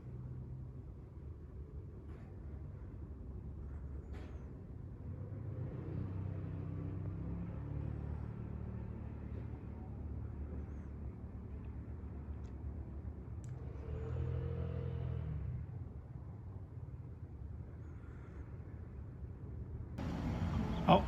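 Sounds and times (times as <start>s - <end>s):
low engine rumble: 15.4s - 21.0s.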